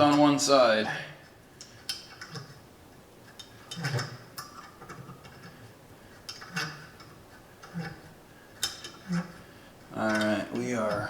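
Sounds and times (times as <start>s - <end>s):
metal tap clicking and scraping: 1.6s - 2.6s, 3.2s - 11.0s.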